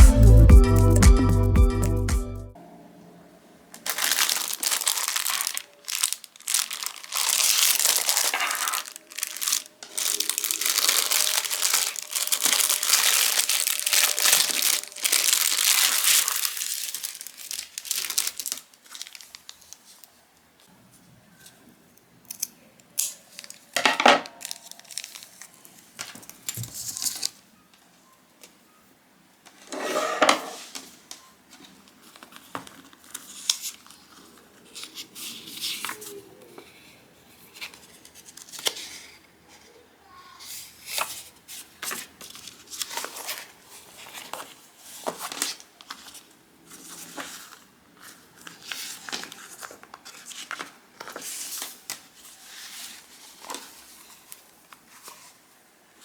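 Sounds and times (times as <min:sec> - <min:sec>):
packaging rustling and tearing: 0:03.8 - 0:20.2, 0:23.0 - 0:27.4, 0:40.8 - 0:55.4.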